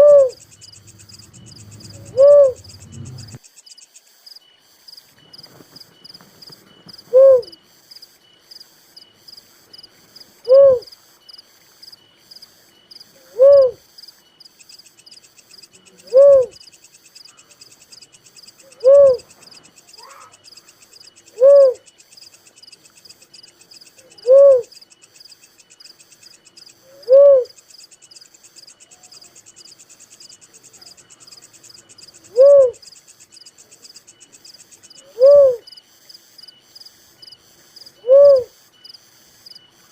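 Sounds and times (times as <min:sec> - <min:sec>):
dove cooing: 0:00.0 - 0:03.4, 0:06.9 - 0:07.6, 0:10.4 - 0:10.9, 0:13.2 - 0:13.8, 0:15.8 - 0:16.6, 0:18.6 - 0:20.4, 0:21.3 - 0:21.9, 0:24.0 - 0:24.7, 0:26.8 - 0:27.6, 0:32.3 - 0:32.8, 0:35.0 - 0:35.7, 0:38.0 - 0:38.6.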